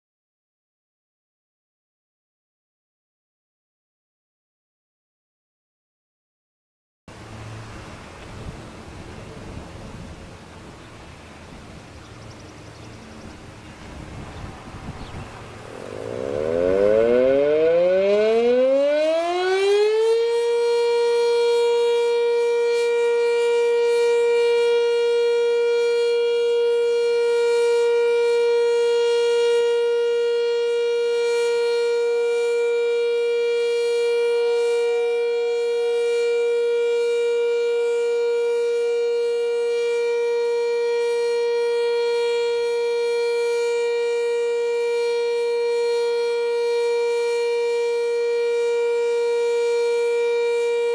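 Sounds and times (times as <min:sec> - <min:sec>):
warning siren winding up: 0:15.4 - 0:50.9.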